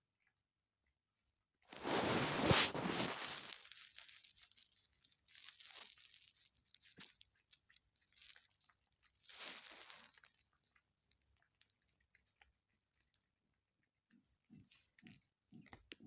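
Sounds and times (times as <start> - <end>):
animal eating crunching: 1.8 - 13.2.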